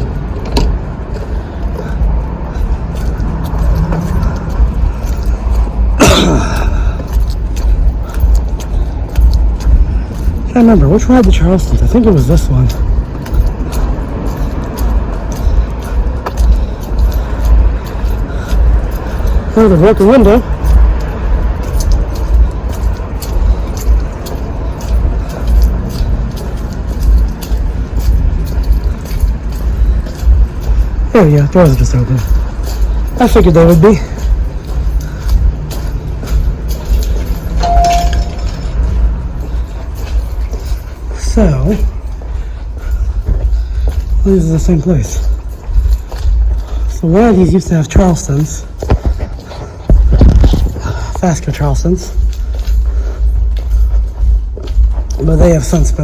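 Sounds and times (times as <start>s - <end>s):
footsteps walking: 0.0s - 56.0s
steady low rumble: 0.0s - 56.0s
person coughing: 5.9s - 7.1s.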